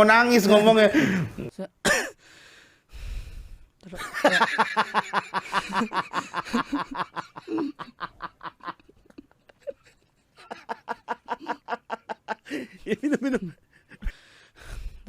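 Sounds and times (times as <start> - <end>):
rapid rhythmic laughter: 4.0 - 14.2.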